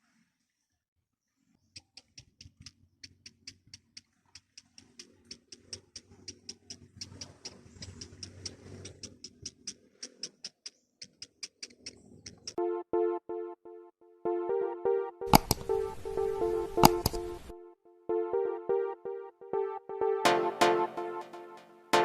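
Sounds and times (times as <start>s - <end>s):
rapid sharp high ticks: 1.8s - 12.6s, 15.3s - 17.5s.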